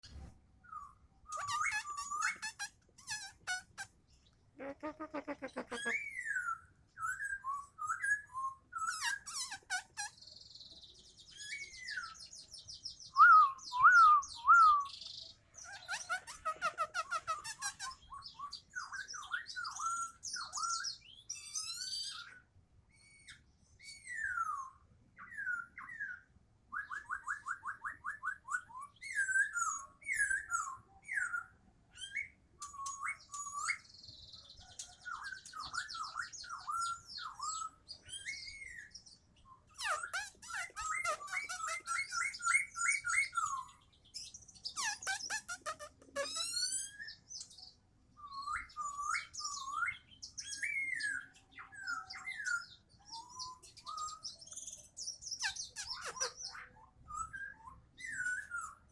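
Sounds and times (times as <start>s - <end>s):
bird song with whistled phrases: 0.0s - 58.9s
bird trill: 0.6s - 3.9s, 4.6s - 22.4s, 23.0s - 58.9s
bird chattering notes: 1.3s - 3.9s, 4.6s - 6.0s, 44.8s - 46.6s, 55.4s - 56.4s.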